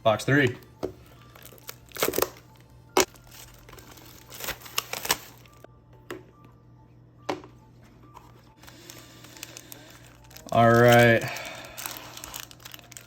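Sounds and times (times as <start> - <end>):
packaging crinkling and tearing: 1.2 - 5.6, 8.6 - 13.0.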